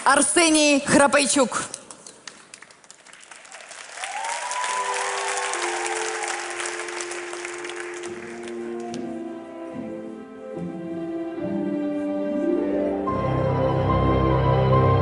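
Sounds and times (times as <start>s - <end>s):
audience applauding: 2.2s - 9.2s
music with long held notes: 4.9s - 15.0s.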